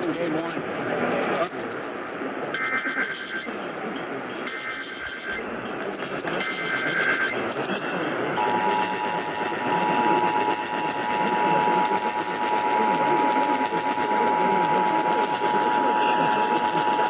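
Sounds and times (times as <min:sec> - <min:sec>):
warbling data tones: 0:04.4 - 0:17.0.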